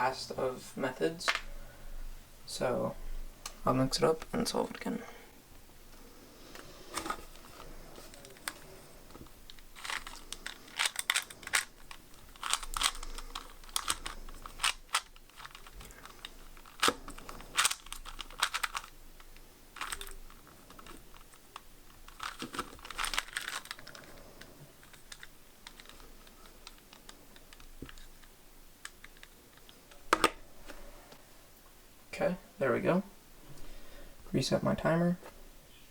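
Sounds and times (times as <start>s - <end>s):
puzzle cube plastic clicking: 9.5s - 24.2s, 24.8s - 30.4s.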